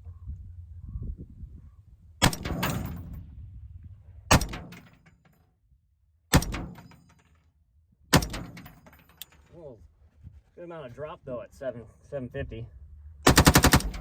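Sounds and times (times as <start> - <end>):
rifle shots with echo: 2.2 - 3.2, 4.3 - 4.8, 6.3 - 7.0, 8.1 - 8.8, 13.3 - 14.0.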